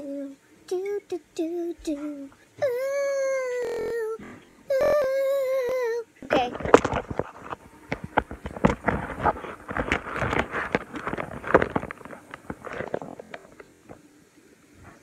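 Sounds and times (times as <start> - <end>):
handling rustling and knocks: 6.4 - 14.0.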